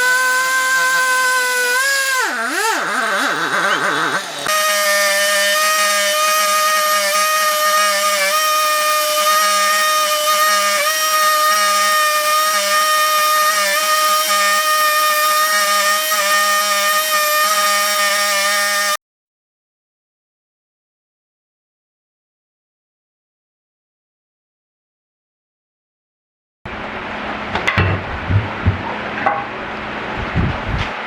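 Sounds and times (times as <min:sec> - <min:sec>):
power tool cutting wood: 0:00.0 - 0:19.0.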